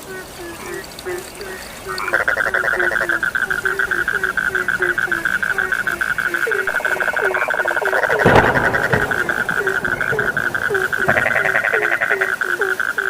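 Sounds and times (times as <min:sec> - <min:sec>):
frog short low calls: 0:00.1 - 0:13.0
frog fast pulsed trill: 0:02.0 - 0:13.0
sudden loud deep sound: 0:06.6 - 0:12.4.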